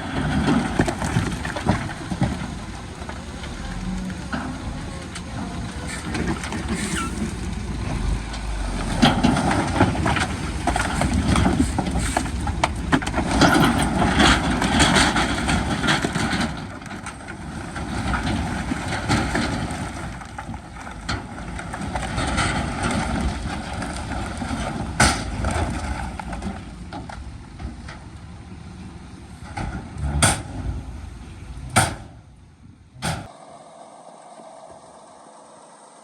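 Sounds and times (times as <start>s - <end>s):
heavy diesel machinery running: 0.0s - 33.3s.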